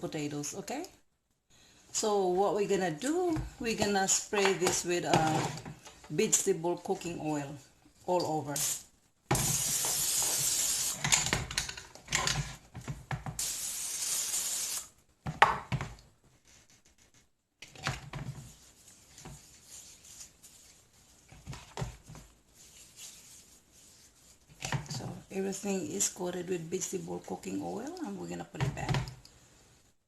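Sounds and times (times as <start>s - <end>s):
cooking oil spray hissing: 8.6s - 11.0s, 13.4s - 14.9s.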